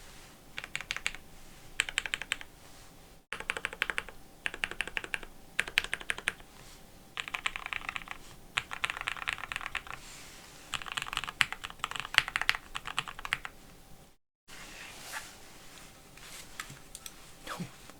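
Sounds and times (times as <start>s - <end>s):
mechanical keyboard typing: 0.6s - 1.2s, 1.8s - 2.5s, 3.4s - 6.4s, 7.2s - 10.0s, 10.7s - 13.5s.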